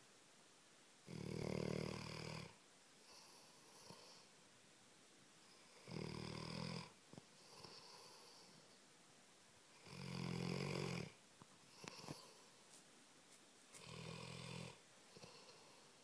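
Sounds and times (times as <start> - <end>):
dog snoring: 1.0 - 4.3, 5.6 - 8.6, 9.8 - 12.4, 13.8 - 15.9
soft breath: 3.0 - 4.4, 7.2 - 8.9, 11.6 - 16.0.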